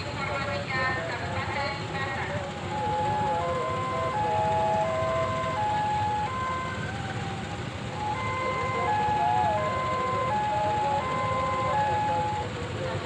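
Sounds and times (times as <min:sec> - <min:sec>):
low traffic rumble: 0:00.0 - 0:13.0
level crossing warning chime: 0:00.2 - 0:13.0.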